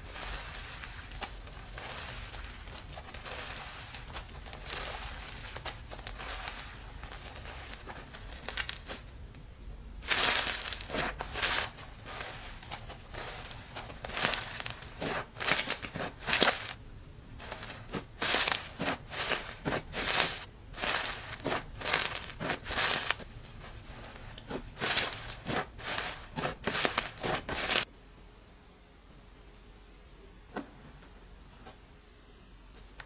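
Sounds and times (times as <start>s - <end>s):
slime squeezed crackling: 0.0s - 9.1s, 10.0s - 16.8s, 17.4s - 27.9s.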